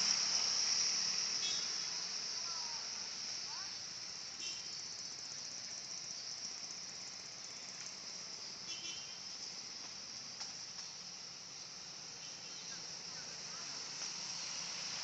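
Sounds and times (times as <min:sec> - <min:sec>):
high-pitched buzzing bird chorus: 0:01.3 - 0:03.8.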